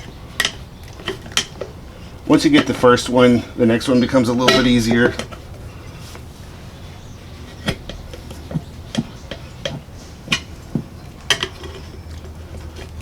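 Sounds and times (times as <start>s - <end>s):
screwdrivers clinking on metal rim: 4.4s - 5.4s, 11.2s - 12.8s.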